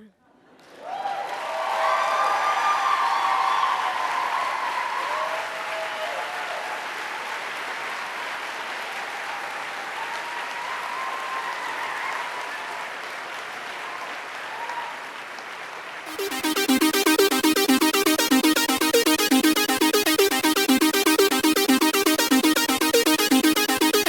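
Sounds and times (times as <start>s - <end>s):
people cheering and whooping: 0.8s - 6.8s
audience applauding: 0.8s - 18.2s.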